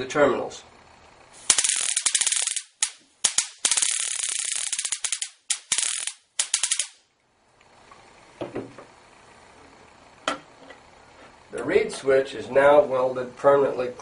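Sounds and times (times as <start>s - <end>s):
stun gun electric crackling: 1.3s - 7.1s.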